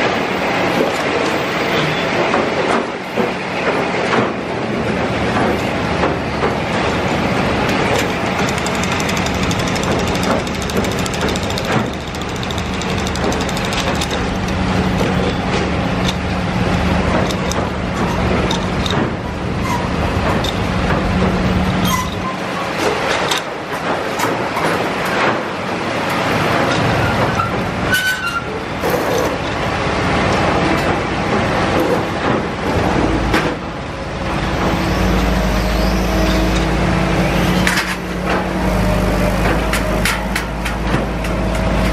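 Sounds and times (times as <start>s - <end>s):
machine engine drone: 4.8s - 23.8s, 28.7s - 41.9s.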